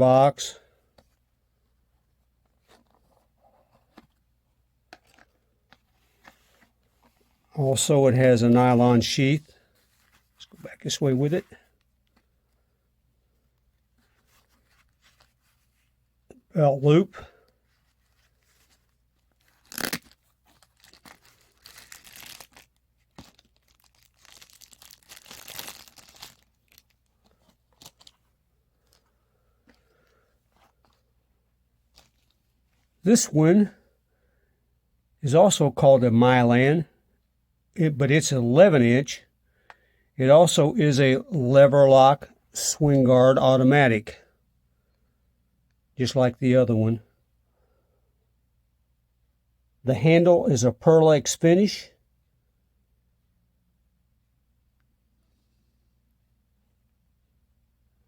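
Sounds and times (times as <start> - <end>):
nylon sheath rasping and rustling: 13.8 - 16.0, 17.6 - 29.8.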